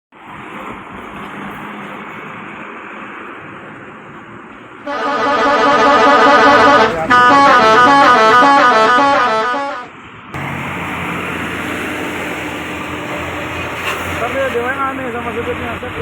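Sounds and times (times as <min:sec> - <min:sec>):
vehicle engine rumble: 0:04.1 - 0:16.0
bus horn playing melody: 0:04.9 - 0:10.0.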